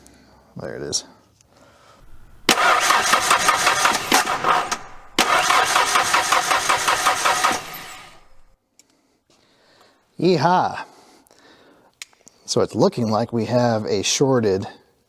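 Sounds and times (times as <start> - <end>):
engine cranking on starter: 2.0 - 8.6.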